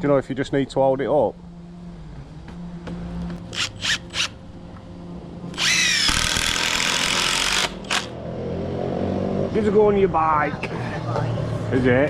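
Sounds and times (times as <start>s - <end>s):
power drill whining under load: 3.5s - 4.4s, 5.5s - 8.2s.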